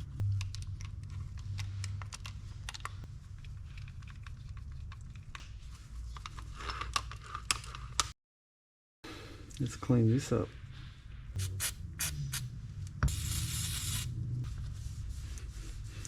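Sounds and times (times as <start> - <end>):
low hum: 10.6 - 16.0.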